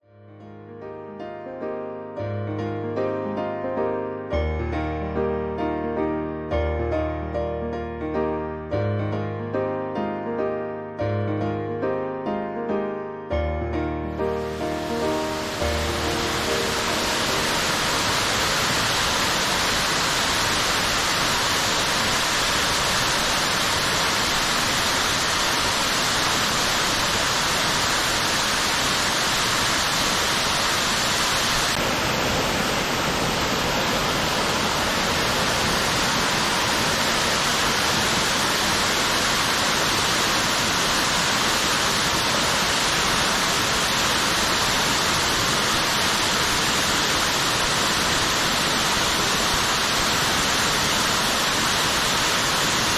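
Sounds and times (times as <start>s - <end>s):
waterfall rushing: 14.1s - 52.9s.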